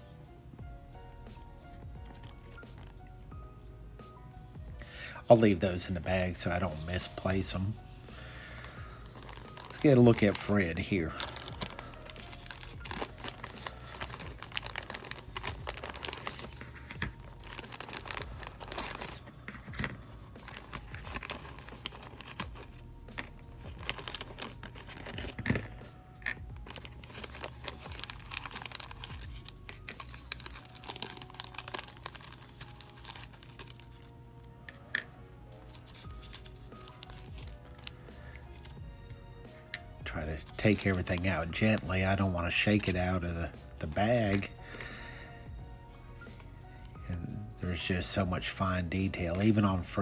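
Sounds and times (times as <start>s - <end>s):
plastic bag crinkling: 5.9s - 34.1s, 35.0s - 38.8s, 39.6s - 43.2s.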